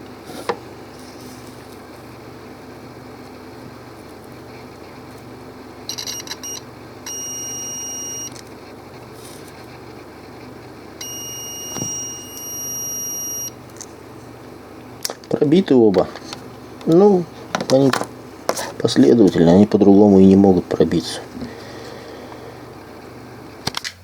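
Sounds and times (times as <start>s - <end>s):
steady low hum: 0.0s - 23.7s
multimeter continuity beeps: 5.8s - 8.4s, 11.0s - 13.6s.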